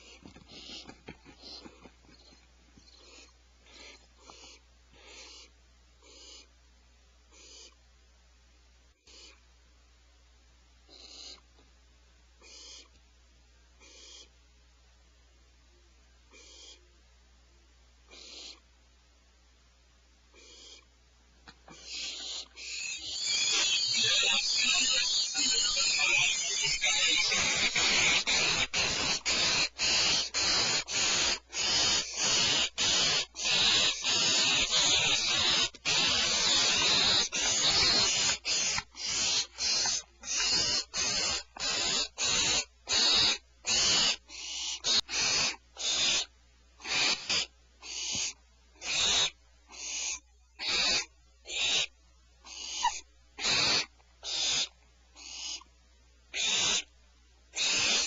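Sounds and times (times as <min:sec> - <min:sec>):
owlets raspy hissing calls: 0:00.0 - 0:01.6, 0:03.0 - 0:06.5, 0:07.4 - 0:07.7, 0:12.4 - 0:12.9, 0:13.8 - 0:14.3, 0:16.4 - 0:16.8, 0:18.1 - 0:18.7, 0:20.4 - 0:20.8, 0:21.7 - 0:55.7, 0:56.3 - 0:56.9, 0:57.5 - 0:58.0.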